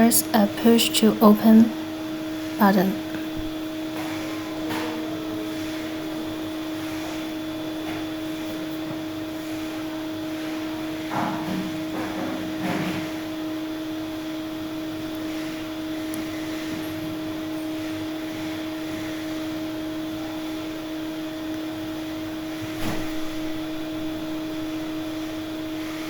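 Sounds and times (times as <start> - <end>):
low two-tone hum: 0.0 - 9.8.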